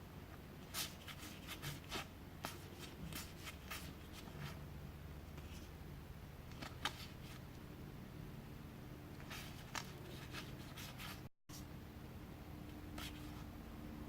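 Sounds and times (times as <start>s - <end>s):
cards sliding and tapping: 6.5s - 7.4s, 9.2s - 11.2s.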